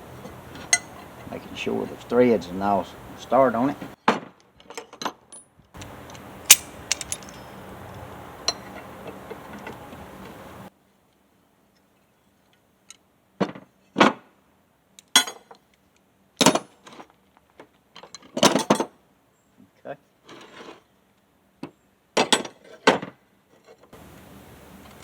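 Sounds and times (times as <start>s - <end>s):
background hiss: 0.0s - 4.0s, 24.0s - 25.0s
sharp clicks: 5.8s - 7.4s
metallic knocks and clinks: 6.5s - 7.7s.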